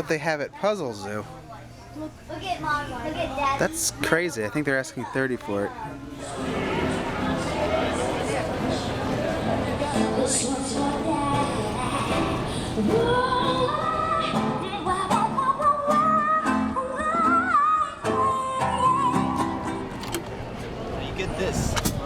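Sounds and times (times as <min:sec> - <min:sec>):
high singing voice: 0:06.2 - 0:19.9.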